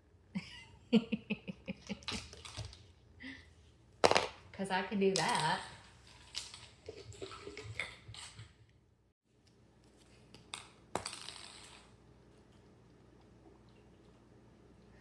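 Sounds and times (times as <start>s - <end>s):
toy discs clattering on floor: 4.0s - 4.4s, 5.1s - 8.5s, 10.3s - 12.0s.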